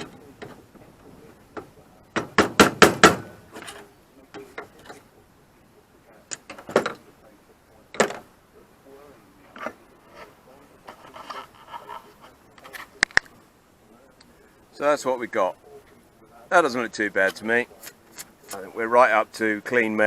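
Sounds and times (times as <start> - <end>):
hammer striking steel bodywork: 2.2 - 3.4.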